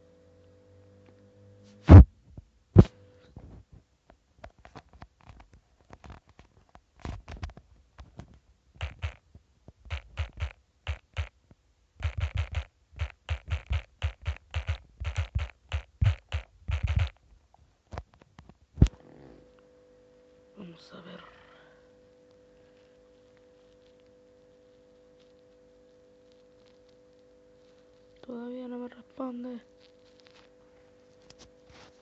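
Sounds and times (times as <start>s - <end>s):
fingers tapping on touchscreen: 8.8s - 9.2s, 9.9s - 11.3s, 12.0s - 17.2s
sharp knocks: 12.0s - 17.1s.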